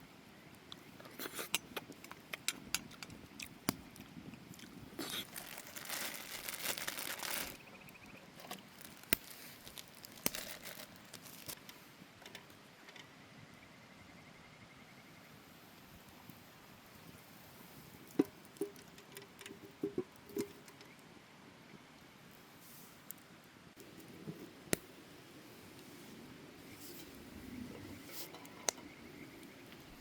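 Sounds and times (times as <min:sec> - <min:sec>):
packaging crinkling and tearing: 0:05.0 - 0:07.6, 0:08.4 - 0:11.6
rustling: 0:05.0 - 0:07.7, 0:08.4 - 0:11.8.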